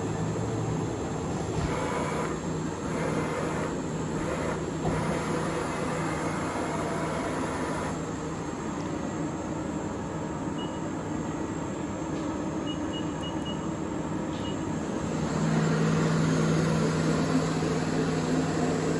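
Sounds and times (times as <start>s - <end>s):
lathe machine hum: 0.0s - 8.6s, 14.8s - 18.9s.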